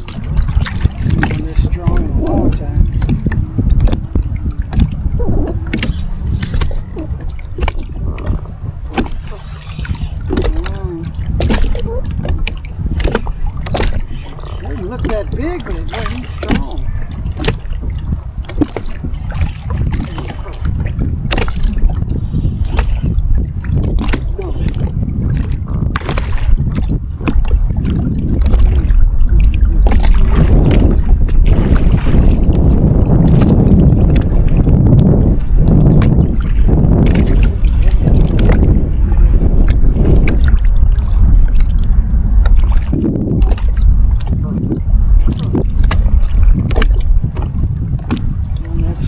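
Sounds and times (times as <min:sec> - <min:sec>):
water lapping around kayak: 0:00.0 - 0:49.0
wind rumbling on microphone: 0:00.0 - 0:49.0
sharp clicks and knocks: 0:01.2 - 0:04.0, 0:05.8 - 0:07.8.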